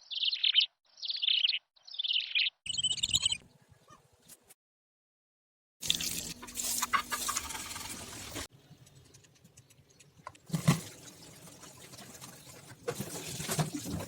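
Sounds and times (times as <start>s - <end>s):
utensil scraping and stirring food: 6.3s - 14.0s.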